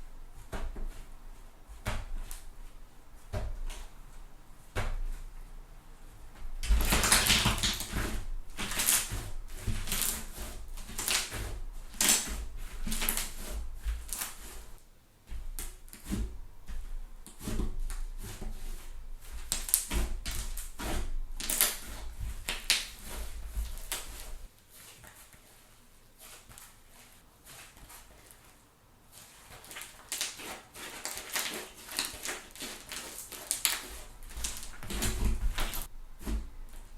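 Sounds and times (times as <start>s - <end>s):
slime popping and crackling: 6.6s - 8.0s, 21.4s - 23.2s, 29.6s - 35.9s.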